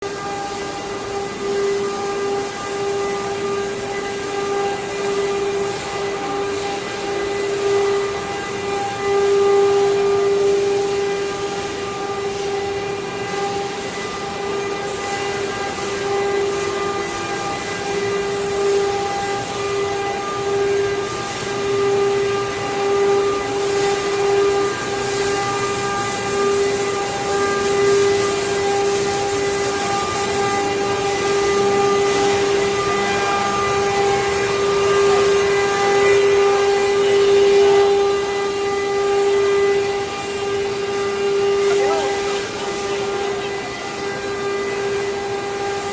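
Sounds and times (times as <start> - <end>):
router spindle high whine: 0.0 - 45.9
cutting hiss: 23.0 - 45.9.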